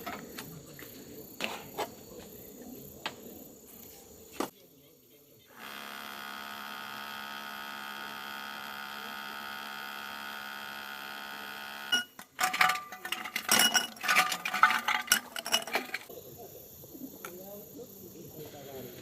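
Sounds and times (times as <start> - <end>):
steady electric hum: 5.6 - 16.1
clicking and clattering: 12.0 - 16.1.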